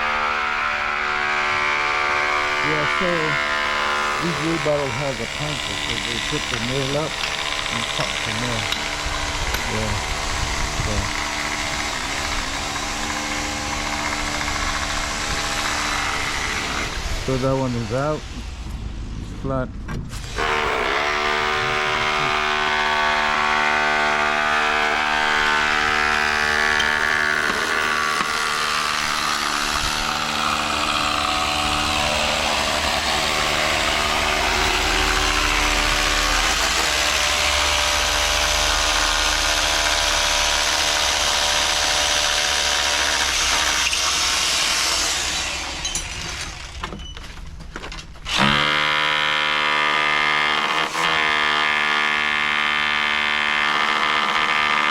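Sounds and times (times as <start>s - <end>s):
machine motor running: 0.0s - 17.4s, 20.3s - 46.8s.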